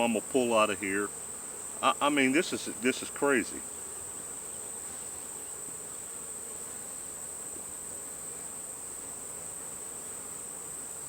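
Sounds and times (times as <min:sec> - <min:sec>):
bees buzzing: 0:00.0 - 0:07.2.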